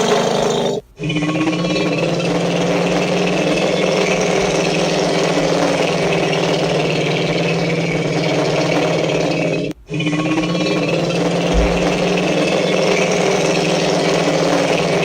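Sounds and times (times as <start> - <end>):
low engine-like rumble: 11.2 - 13.0.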